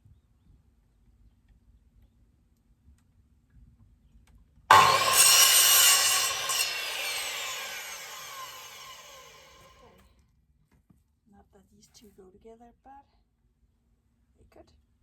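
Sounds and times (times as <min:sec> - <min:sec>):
power saw cutting wood: 0:04.7 - 0:09.9.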